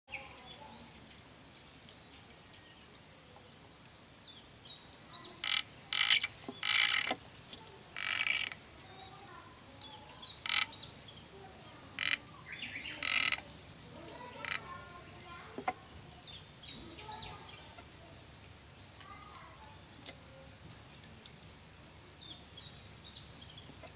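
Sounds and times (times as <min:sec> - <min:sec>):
frog calling short notes: 0:05.4 - 0:07.1, 0:08.0 - 0:08.6, 0:10.4 - 0:10.7, 0:13.0 - 0:13.4.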